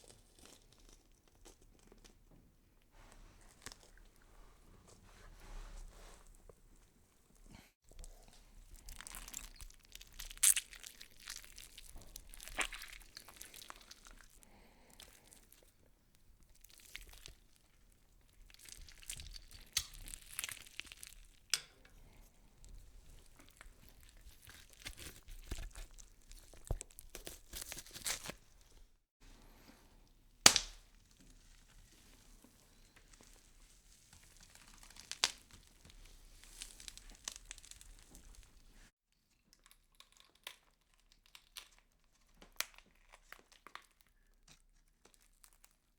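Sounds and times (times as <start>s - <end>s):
crunching and crackling: 0.0s - 2.3s, 7.5s - 29.0s, 32.8s - 38.9s.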